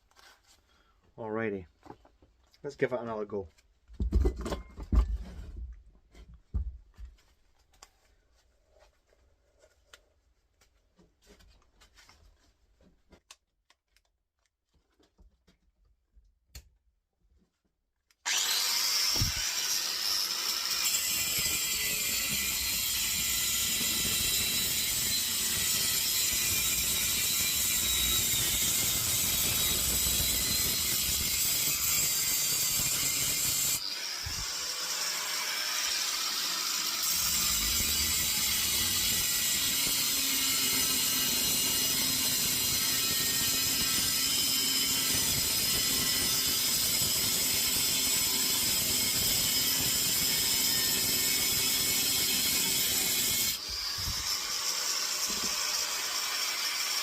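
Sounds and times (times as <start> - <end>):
angle grinder cutting metal: 18.3 - 57.0.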